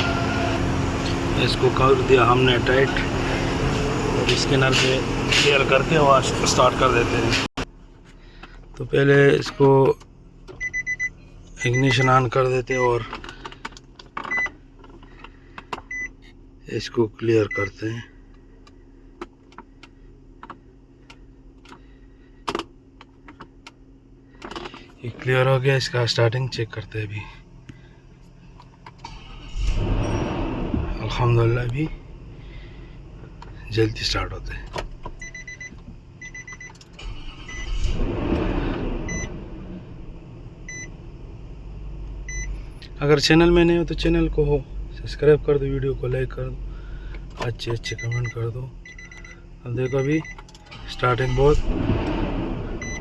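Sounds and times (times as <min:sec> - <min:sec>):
car engine running: 0:00.0 - 0:16.0, 0:17.5 - 0:53.0
low steady hum: 0:00.0 - 0:53.0
vehicle warning chime beeping: 0:10.6 - 0:13.1, 0:33.6 - 0:38.2, 0:38.9 - 0:39.4, 0:40.6 - 0:41.0, 0:42.0 - 0:46.7, 0:47.3 - 0:51.7, 0:52.8 - 0:53.0.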